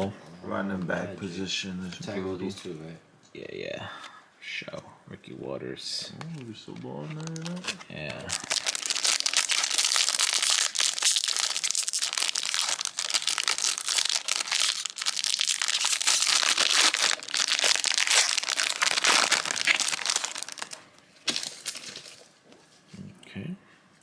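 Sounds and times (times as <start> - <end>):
plastic wrapper crinkling: 6.2 - 22.4.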